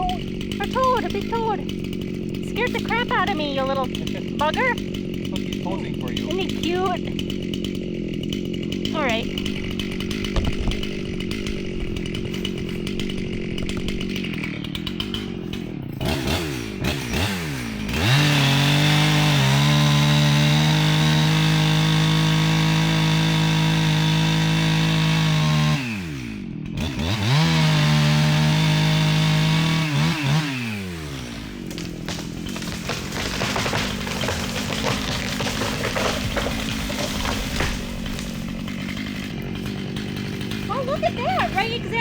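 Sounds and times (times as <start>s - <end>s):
chainsaw revving and cutting: 0.0s - 42.0s.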